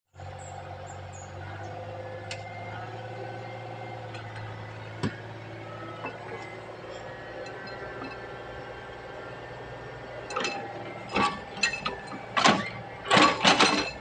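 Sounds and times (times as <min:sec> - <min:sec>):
excavator diesel engine running: 0:00.1 - 0:14.0.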